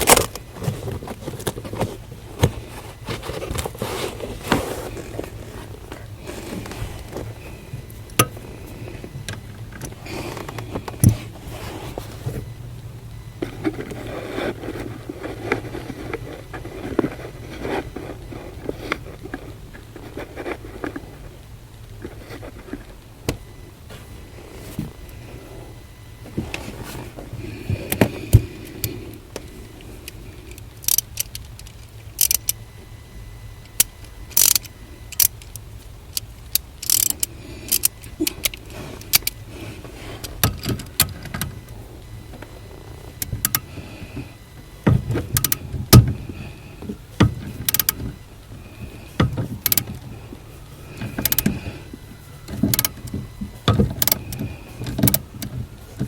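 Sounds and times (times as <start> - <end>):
low steady hum: 0.0 - 56.0
sharp metallic clicks and clunks: 27.9 - 32.6, 33.6 - 39.4, 44.4 - 48.2, 49.2 - 50.0, 52.4 - 56.0.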